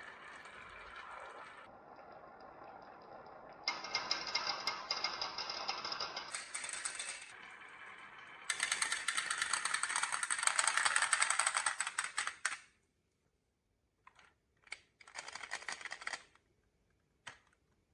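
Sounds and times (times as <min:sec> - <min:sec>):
marbles clattering down marble run: 0:00.0 - 0:12.6.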